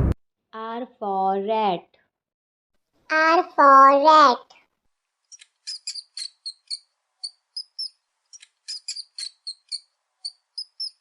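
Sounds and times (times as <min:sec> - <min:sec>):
high-pitched chirps: 0:05.3 - 0:11.0.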